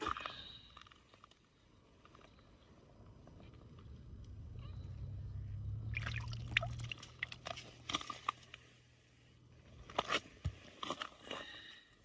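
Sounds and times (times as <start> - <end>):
low steady hum: 2.4 - 10.4.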